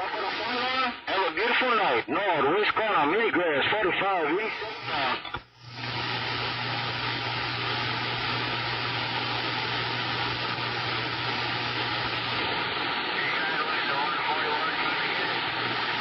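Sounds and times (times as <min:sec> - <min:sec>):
radio static hiss: 0:00.0 - 0:16.0
radio click: 0:04.9 - 0:05.5.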